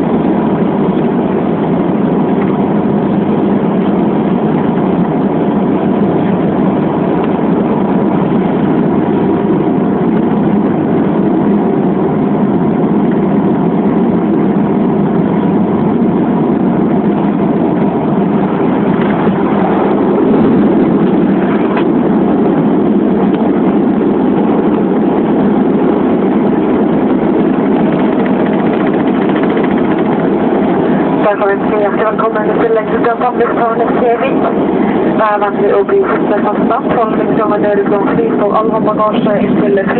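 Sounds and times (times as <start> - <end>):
turboprop engines droning in cabin: 0.0 - 39.9.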